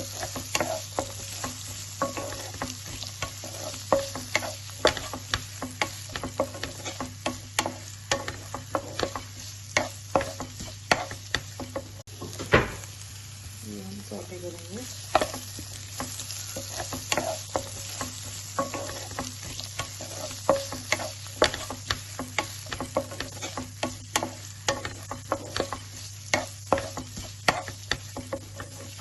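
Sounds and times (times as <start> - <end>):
utensil scraping a pan: 0.0 - 11.9, 15.1 - 29.0
onions sizzling in a pan: 0.0 - 29.0.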